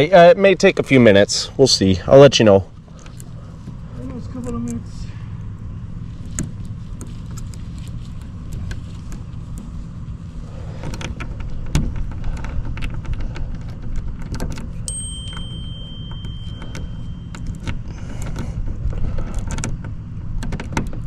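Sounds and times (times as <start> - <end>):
steady low rumble: 0.0 - 21.0
small metallic clicks of lock tools: 13.9 - 18.4
thin high tone: 14.9 - 18.0.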